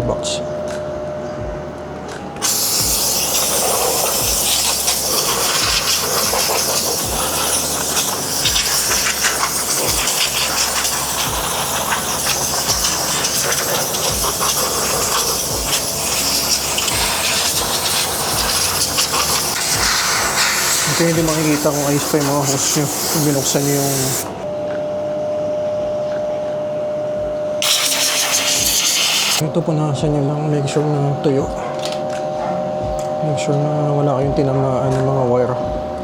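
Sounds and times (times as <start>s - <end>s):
steam cleaner jet hissing: 2.4s - 24.5s, 27.6s - 29.4s.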